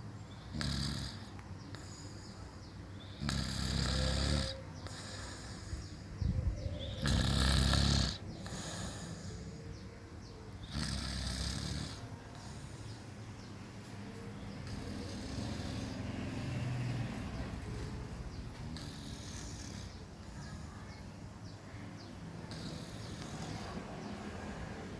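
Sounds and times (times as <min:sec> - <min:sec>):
person snoring: 0:07.0 - 0:09.5.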